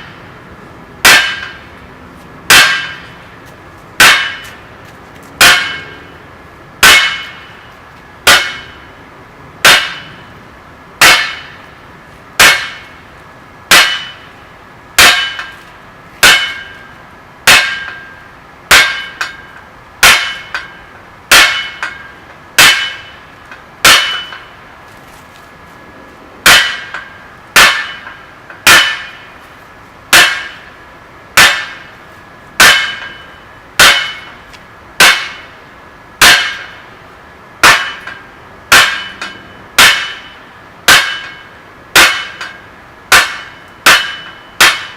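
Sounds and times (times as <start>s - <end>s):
hammer blows on steel on anvil: 1.0s - 1.8s, 2.5s - 3.2s, 4.0s - 4.7s, 5.4s - 6.2s, 6.8s - 8.9s, 9.6s - 10.4s, 11.0s - 11.6s, 12.4s - 13.0s, 13.7s - 14.4s, 15.0s - 15.6s, 16.2s - 24.6s, 26.4s - 29.4s, 30.1s - 30.8s, 31.4s - 32.0s, 32.6s - 35.6s, 36.2s - 36.8s, 37.6s - 44.9s.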